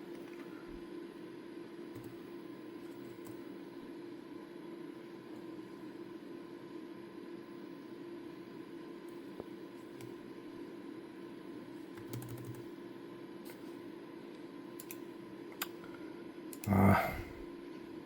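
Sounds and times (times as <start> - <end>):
steady electrical hum: 0.0 - 18.0
computer keyboard clicks: 12.0 - 12.7, 14.8 - 15.0.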